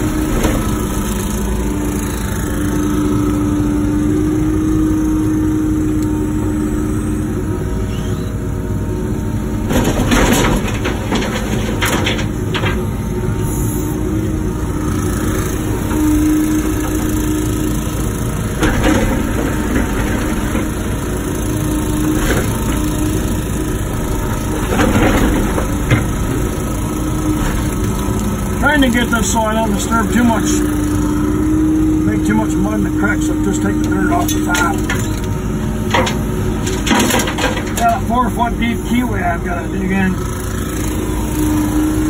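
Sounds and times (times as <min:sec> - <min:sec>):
excavator diesel engine: 0:00.0 - 0:42.0
bucket scraping and clunking: 0:09.7 - 0:13.0, 0:18.5 - 0:29.0, 0:32.2 - 0:38.4.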